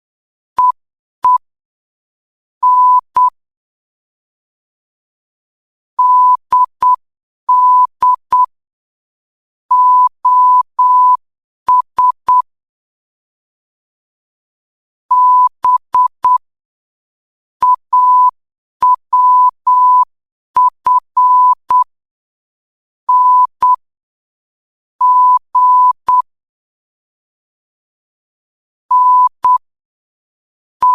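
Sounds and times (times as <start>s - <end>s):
morse code beeps: 2.6s - 3.3s, 6.0s - 8.5s, 9.7s - 12.4s, 15.1s - 16.4s, 17.6s - 21.9s, 23.1s - 23.8s, 25.0s - 26.2s, 28.9s - 29.6s.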